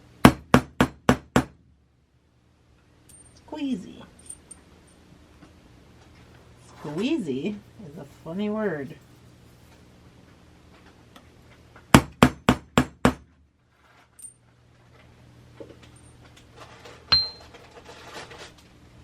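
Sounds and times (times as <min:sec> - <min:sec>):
metallic clink with ring: 0:03.1 - 0:03.4, 0:04.2 - 0:05.0, 0:17.1 - 0:17.4
hammer striking metal stamp: 0:17.1 - 0:17.4.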